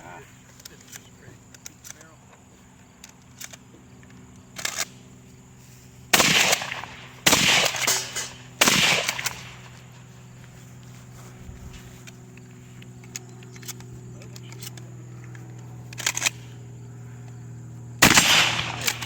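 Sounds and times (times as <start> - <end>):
shotgun shots: 6.1 - 9.8, 18.0 - 19.0.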